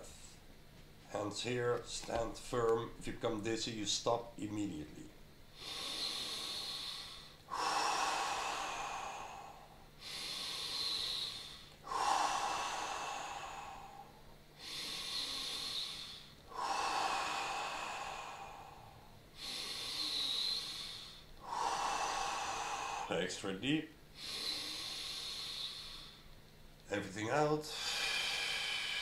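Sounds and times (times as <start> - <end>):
person breathing deeply: 5.6 - 23.4, 24.2 - 26.3, 27.7 - 29.0.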